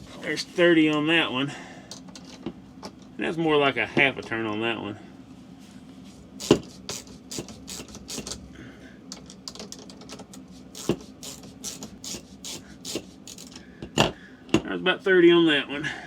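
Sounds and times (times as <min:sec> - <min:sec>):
hand ratchet clicking: 0:06.4 - 0:08.4, 0:09.2 - 0:13.6.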